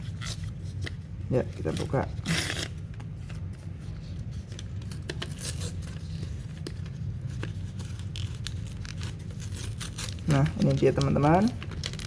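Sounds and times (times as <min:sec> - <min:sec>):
packaging clicks and rustling: 0:04.6 - 0:12.0.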